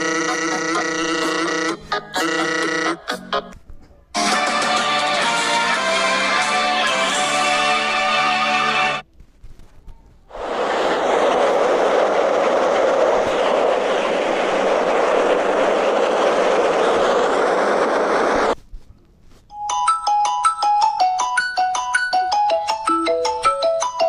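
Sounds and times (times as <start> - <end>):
steady rushing noise: 10.3 - 18.7
chiming ringtone tune: 19.5 - 24.0.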